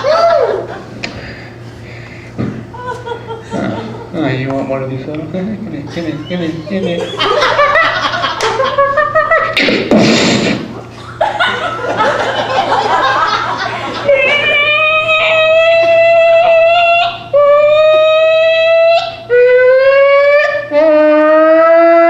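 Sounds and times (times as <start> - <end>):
long whining vocal tones: 14.0 - 22.0.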